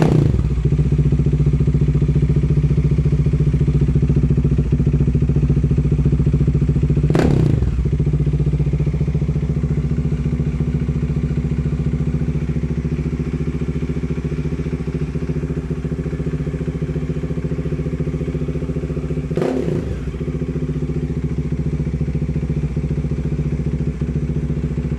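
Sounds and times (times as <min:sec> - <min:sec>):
engine revving: 0:00.0 - 0:00.6, 0:07.1 - 0:07.9, 0:19.3 - 0:20.2
motorcycle engine idling: 0:00.0 - 0:24.9.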